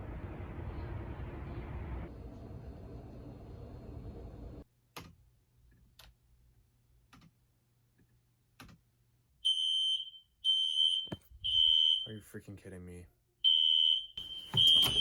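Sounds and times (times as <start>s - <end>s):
smoke alarm beeping: 9.4s - 12.1s, 13.4s - 15.0s.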